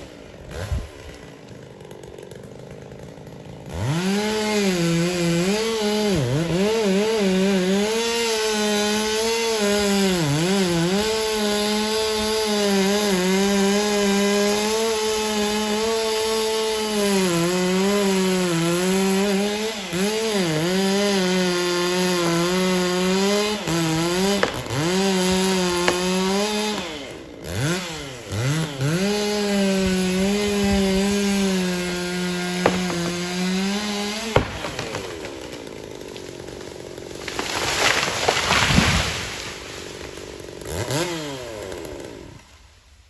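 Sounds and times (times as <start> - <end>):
chainsaw cutting at high revs: 0.0 - 43.0.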